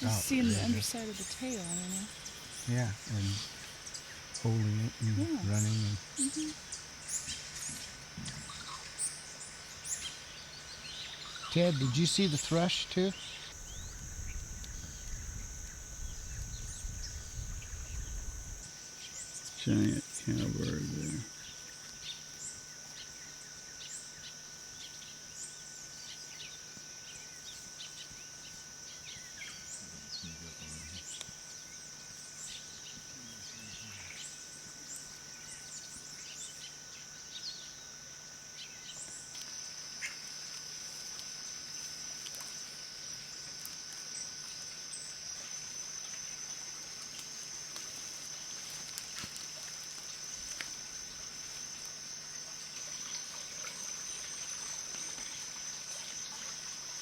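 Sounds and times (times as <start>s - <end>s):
high-pitched insect drone: 0.0s - 57.0s
faint voices murmuring: 19.7s - 21.3s.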